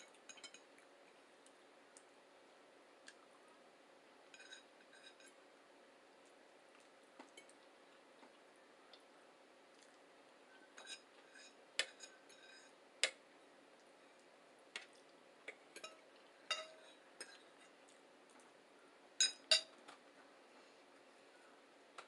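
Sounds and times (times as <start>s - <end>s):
cutlery clinking against plates: 0.0s - 0.7s, 4.3s - 5.4s, 10.8s - 13.2s, 15.7s - 17.5s, 19.2s - 19.8s.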